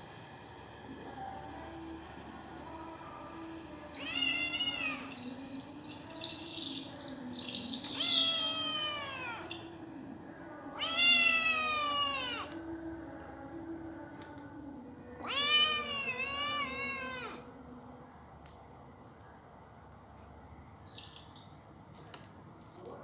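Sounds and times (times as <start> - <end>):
cat meowing: 4.0 - 5.1, 8.0 - 9.6, 10.8 - 12.6, 15.2 - 17.4.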